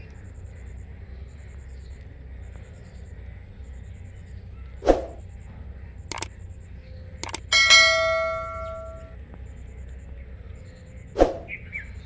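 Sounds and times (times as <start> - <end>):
clicks: 6.1 - 6.3, 7.2 - 9.1
brief sharp sound: 7.2 - 9.1
small metal bell ringing: 7.2 - 9.2.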